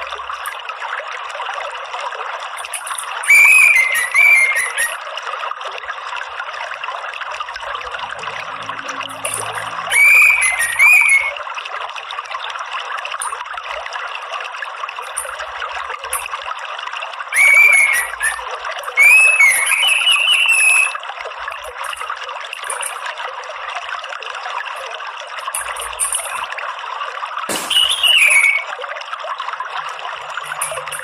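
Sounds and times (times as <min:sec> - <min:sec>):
water trickling: 0:00.0 - 0:31.0
bird twittering and chirping: 0:03.2 - 0:05.0, 0:09.9 - 0:11.3, 0:17.4 - 0:21.0, 0:27.6 - 0:28.7.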